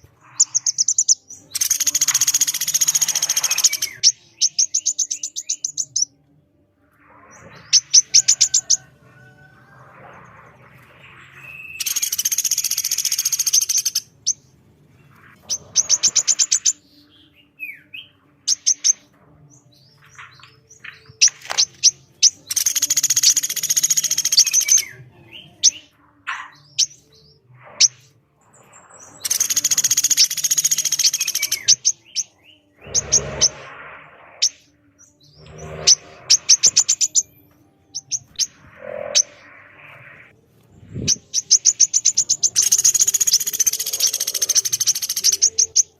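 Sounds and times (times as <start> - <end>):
bird chips: 0.0 - 6.1, 11.4 - 14.1, 20.1 - 24.9, 29.2 - 32.2, 41.1 - 45.9
harsh rasping bird calls: 0.0 - 6.1, 11.4 - 19.1, 20.0 - 27.0, 29.0 - 37.3, 41.1 - 45.9
high ticking bird notes: 0.0 - 6.1, 11.6 - 14.5, 21.2 - 24.9, 29.2 - 33.6, 35.4 - 37.3, 41.1 - 45.9.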